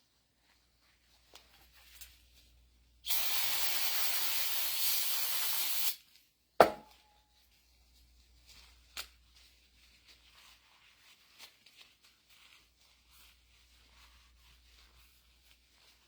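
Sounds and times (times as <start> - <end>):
spraying hiss: 3.1 - 6.0.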